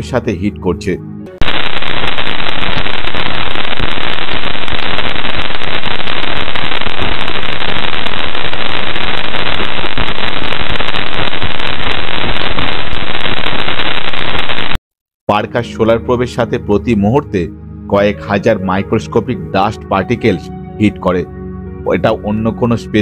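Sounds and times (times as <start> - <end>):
dense crackling static: 1.4 - 14.8.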